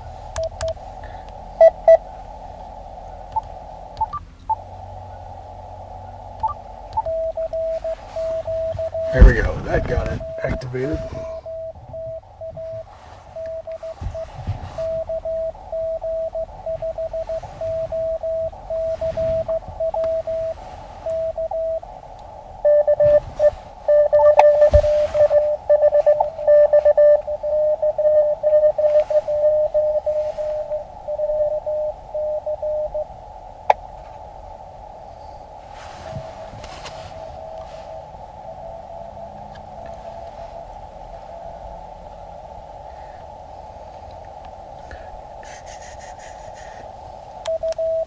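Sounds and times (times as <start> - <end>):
radio receiver hiss: 0.1 - 48.0
morse code sidetone: 0.4 - 0.8, 1.6 - 2.0, 3.4 - 4.7, 6.4 - 21.9, 22.6 - 33.1, 47.4 - 48.0
morse code from radio: 1.6 - 2.0, 3.4 - 4.6, 6.4 - 21.9, 22.6 - 33.1, 47.4 - 48.0.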